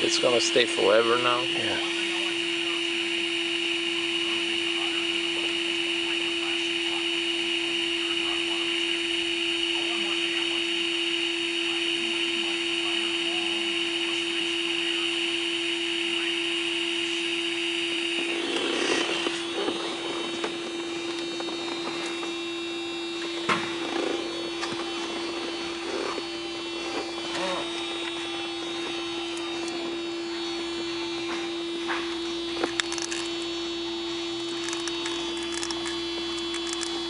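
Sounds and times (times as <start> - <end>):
constant hum: 0.0 - 37.0
small electric tool hissing: 18.0 - 22.2.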